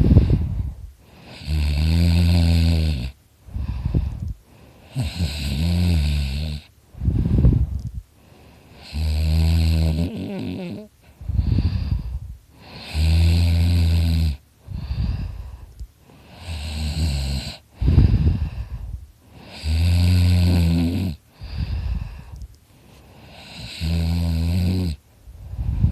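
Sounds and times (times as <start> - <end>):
man snoring loudly: 1.1 - 3.2, 4.8 - 6.7, 8.7 - 12.0, 12.6 - 15.3, 16.2 - 18.6, 19.4 - 22.0, 23.2 - 25.0.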